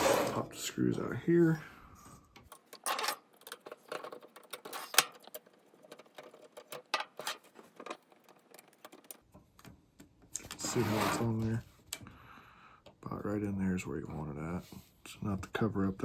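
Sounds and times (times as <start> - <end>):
hands handling plastic and metal parts: 2.0 - 10.6.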